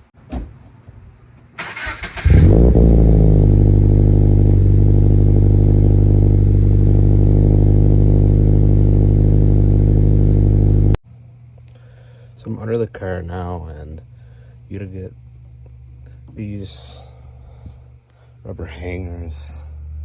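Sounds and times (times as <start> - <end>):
engine cranking: 1.6 - 3.7
car engine idling loudly: 2.3 - 11.0.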